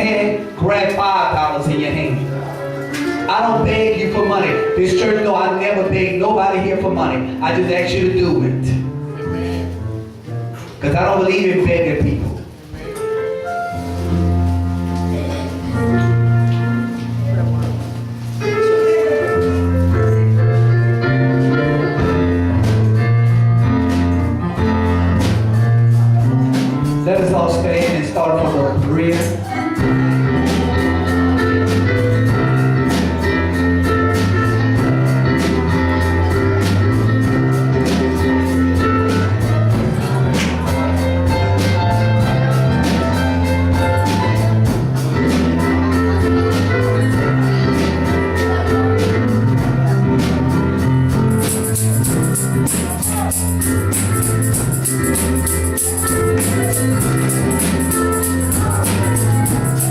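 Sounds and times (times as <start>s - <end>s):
church band music: 0.0s - 59.9s
tambourine shaking: 51.1s - 59.9s.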